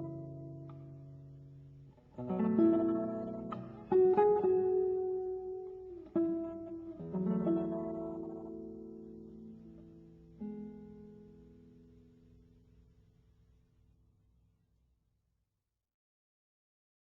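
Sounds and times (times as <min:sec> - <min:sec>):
slow guitar chords: 0:00.0 - 0:12.6.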